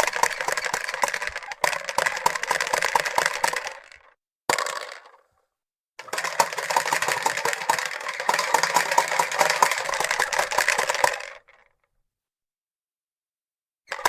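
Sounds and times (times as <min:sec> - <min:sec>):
toy balls popping and rattling: 0:00.0 - 0:05.2, 0:06.0 - 0:11.7.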